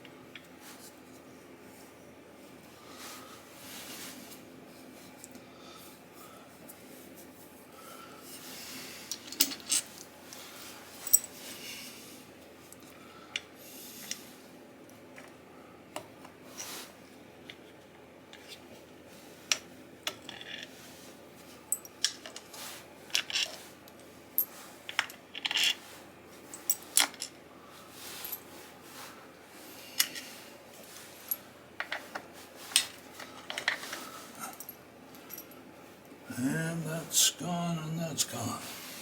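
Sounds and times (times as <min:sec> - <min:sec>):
tools and screws clinking: 0:09.1 - 0:10.1, 0:11.0 - 0:11.4, 0:24.4 - 0:25.8, 0:26.4 - 0:27.4.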